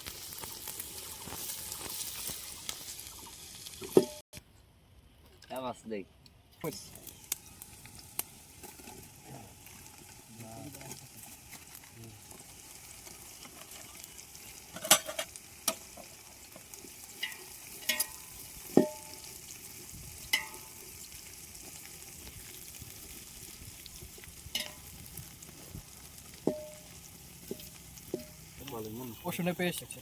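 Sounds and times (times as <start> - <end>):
food sizzling in oil: 0.0 - 4.2, 6.7 - 30.0
metal spoon clinking on pan: 17.2 - 18.2, 24.6 - 24.9.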